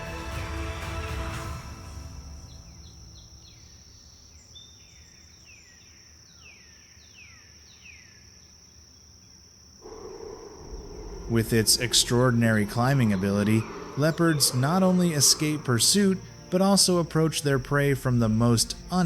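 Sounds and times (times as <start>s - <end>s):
background music: 0.0s - 3.6s, 11.3s - 19.0s
high insect drone: 1.4s - 19.0s.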